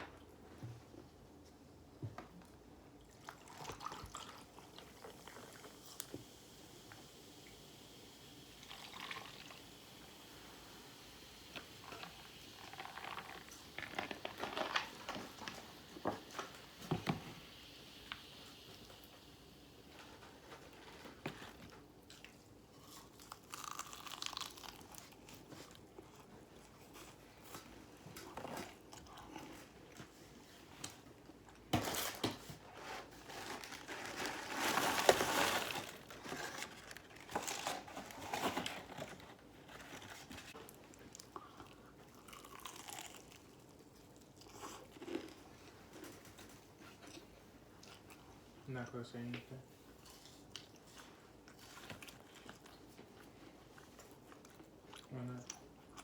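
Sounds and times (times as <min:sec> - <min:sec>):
fried chicken crunching: 0:22.8 - 0:25.4, 0:42.2 - 0:43.4
paper wrapping crinkling: 0:31.8 - 0:40.6.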